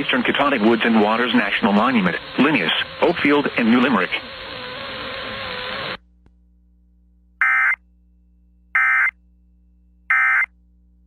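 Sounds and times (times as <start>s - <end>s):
broadcast hiss: 0.0s - 4.5s
faint low hum: 6.0s - 11.0s
buzzing digital data tones: 7.4s - 7.8s.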